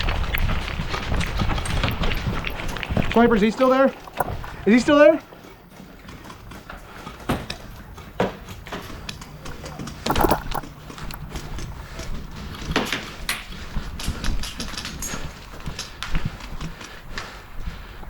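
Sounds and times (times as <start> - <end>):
gear knocking: 0.1 - 5.0, 10.0 - 11.6.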